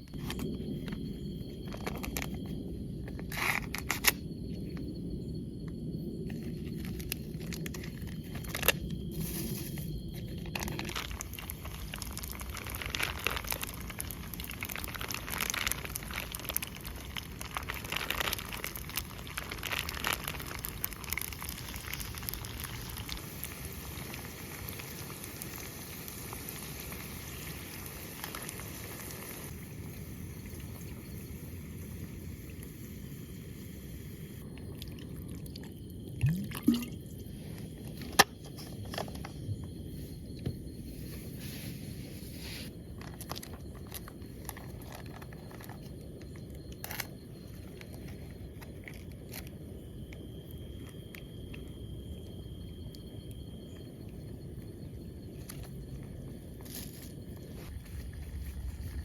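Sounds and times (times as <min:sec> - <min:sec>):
crackling and crinkling: 0:00.0 - 0:29.7, 0:34.4 - 0:59.0
low steady hiss: 0:08.5 - 0:34.9.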